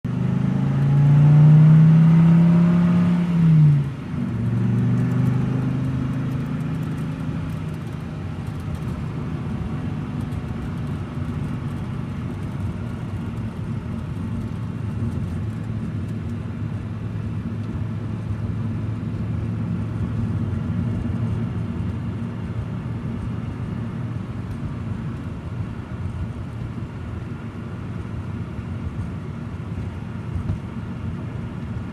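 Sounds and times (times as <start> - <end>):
car engine revving: 0.1 - 15.8.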